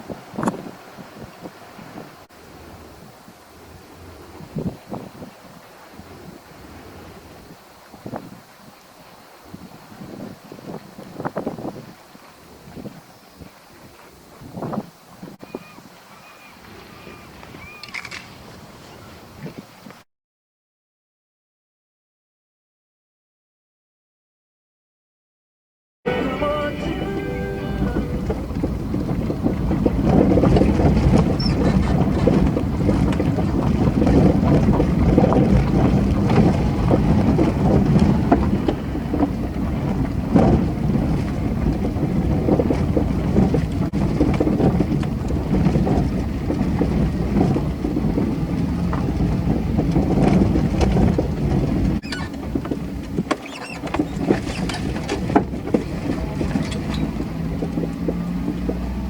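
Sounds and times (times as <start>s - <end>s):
wind buffeting microphone: 0.0s - 20.0s, 26.1s - 59.0s
low rumbling noise: 2.2s - 7.8s, 26.1s - 53.2s.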